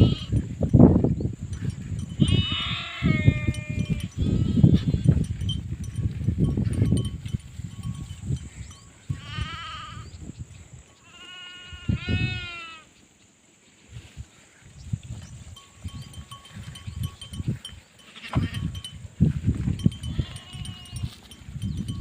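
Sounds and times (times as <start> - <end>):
sheep bleating: 2.2 - 4.9, 9.1 - 10.1, 11.0 - 12.9, 20.0 - 21.2.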